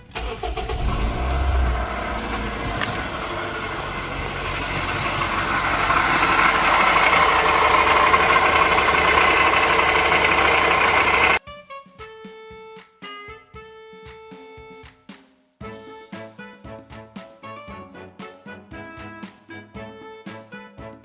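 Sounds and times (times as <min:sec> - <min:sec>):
car engine with abnormal noise: 0:00.1 - 0:11.4.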